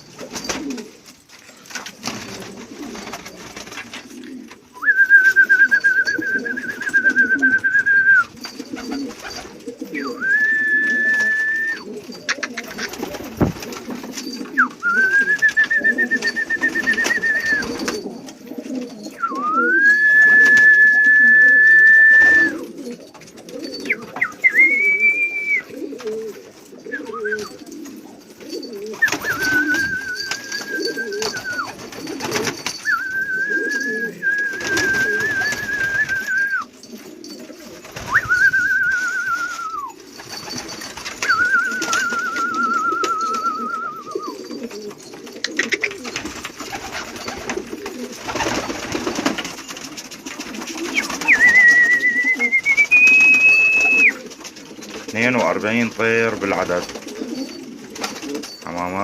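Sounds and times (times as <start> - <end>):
pigeons cooing: 0.0 - 1.1, 1.7 - 59.0
long high whistles: 19.2 - 22.6, 24.4 - 25.7, 29.0 - 31.7, 32.8 - 36.7, 38.1 - 40.0.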